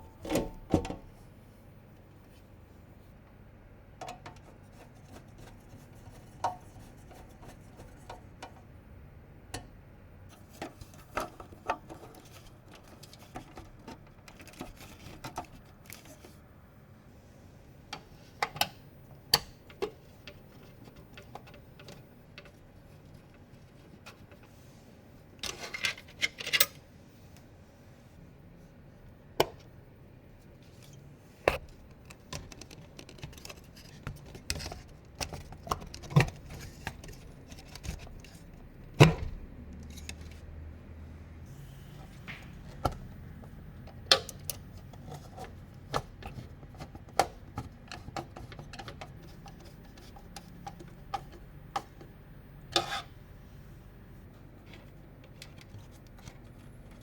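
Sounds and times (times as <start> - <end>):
computer parts clicking and tapping: 31.6 - 36.4.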